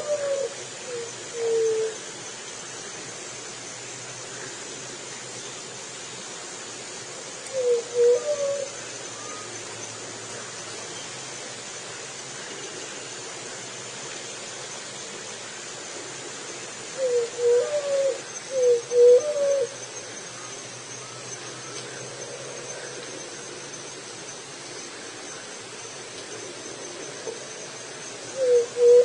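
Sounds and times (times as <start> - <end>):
dove cooing: 0.0 - 2.0, 7.5 - 9.5, 17.0 - 19.8, 28.3 - 29.0
background hiss: 0.0 - 29.0.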